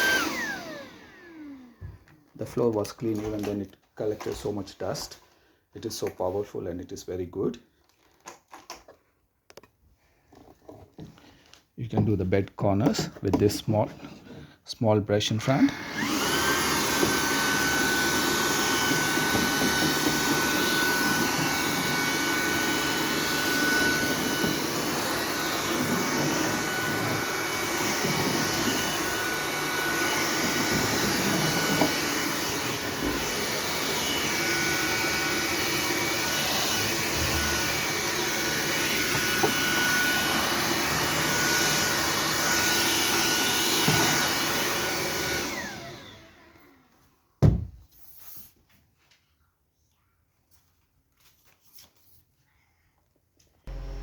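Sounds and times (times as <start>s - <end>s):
vacuum winding down: 0.0s - 1.9s, 15.6s - 46.6s, 53.7s - 54.0s
stick vacuum cleaner running: 0.0s - 2.2s, 15.5s - 46.9s, 53.7s - 54.0s.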